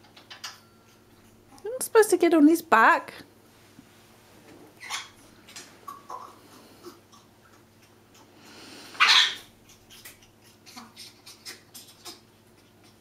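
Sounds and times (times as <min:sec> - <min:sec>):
parrot hissing: 0:08.3 - 0:12.2.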